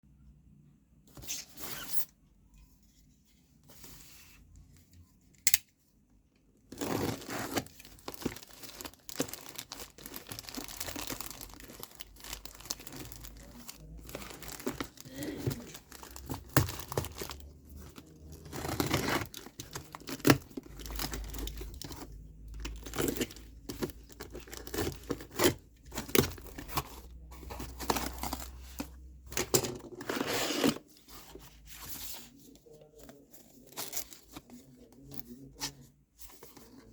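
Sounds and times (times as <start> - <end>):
packaging torn and crinkled: 6.8 - 26.8.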